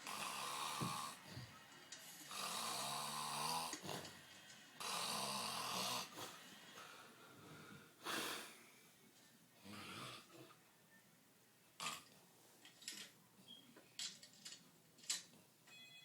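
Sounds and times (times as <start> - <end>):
man snoring: 0.0 - 1.5, 2.3 - 4.2, 4.8 - 6.4, 9.6 - 10.4
quiet breathing: 5.7 - 10.7.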